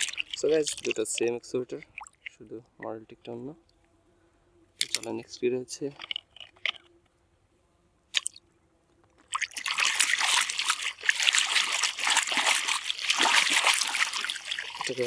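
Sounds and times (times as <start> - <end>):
water splashing and trickling: 0.0 - 2.7, 8.1 - 8.4, 9.2 - 15.0.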